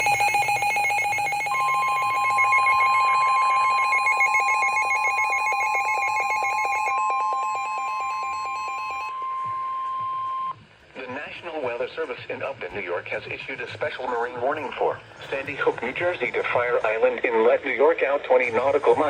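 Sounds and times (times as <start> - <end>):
pulsing trilling electronic alarm: 0.0 - 10.6
steady single-pitch alert tone: 0.0 - 10.6.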